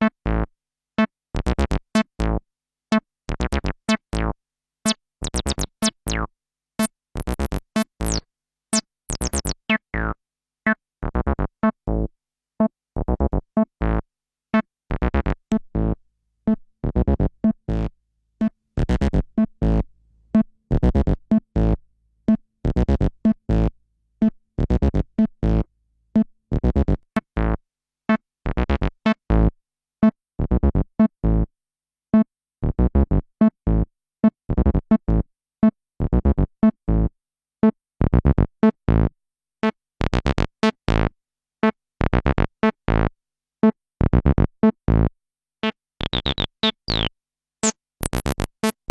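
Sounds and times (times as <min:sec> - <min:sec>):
acid synth bassline: 0:04.1 - 0:04.4, 0:05.2 - 0:06.3, 0:07.2 - 0:08.2, 0:09.1 - 0:10.2, 0:46.0 - 0:48.9.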